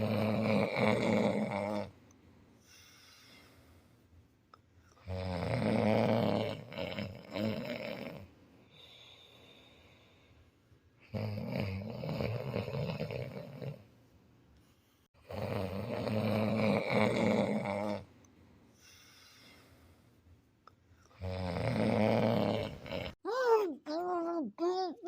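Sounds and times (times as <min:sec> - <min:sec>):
person snoring: 0:00.0 - 0:02.0, 0:05.0 - 0:08.3, 0:11.1 - 0:13.8, 0:15.2 - 0:18.1, 0:21.1 - 0:23.2
quiet breathing: 0:01.8 - 0:05.2, 0:08.4 - 0:10.8, 0:13.8 - 0:15.3, 0:17.9 - 0:21.3.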